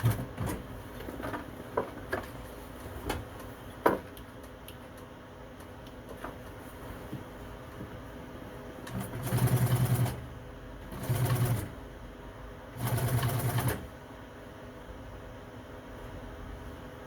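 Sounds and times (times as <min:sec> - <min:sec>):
sewing machine stitching: 0:10.9 - 0:11.8, 0:12.8 - 0:13.9.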